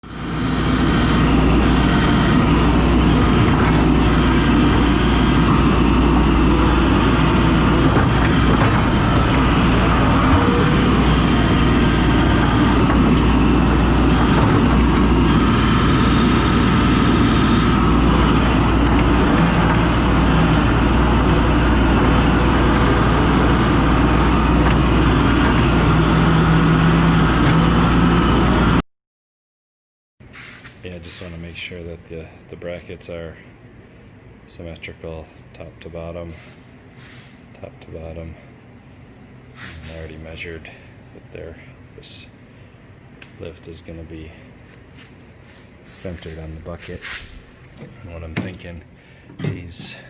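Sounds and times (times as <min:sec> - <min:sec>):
skid steer engine running: 0:00.0 - 0:28.8.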